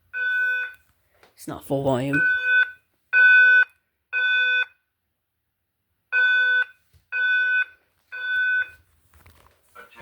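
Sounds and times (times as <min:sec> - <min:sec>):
fire alarm beeps: 0:00.1 - 0:00.8, 0:02.1 - 0:04.8, 0:06.1 - 0:08.8.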